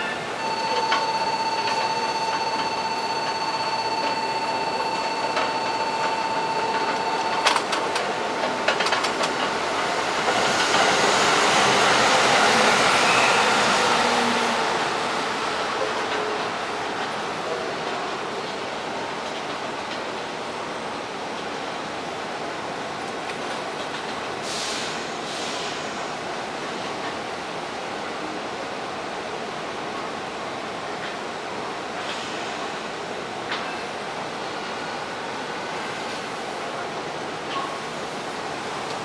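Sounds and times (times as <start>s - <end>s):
steady high tone: 0.0s - 8.5s
passing train rushing: 0.0s - 39.0s.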